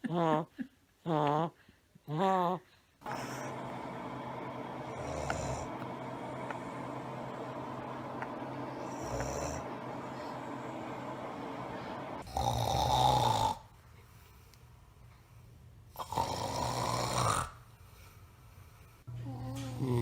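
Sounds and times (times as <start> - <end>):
man snoring: 4.9 - 6.1, 8.8 - 13.6, 16.0 - 17.6.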